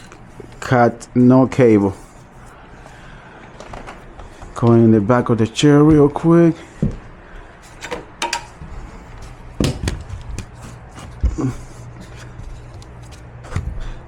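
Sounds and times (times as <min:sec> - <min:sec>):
clicks and knocks from hands working: 0:07.8 - 0:08.6.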